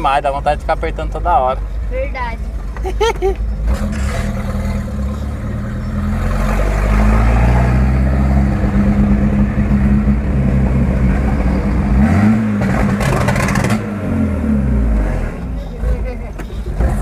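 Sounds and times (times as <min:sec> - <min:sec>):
loud car engine running: 0:03.4 - 0:17.0
exhaust pops: 0:12.6 - 0:13.9.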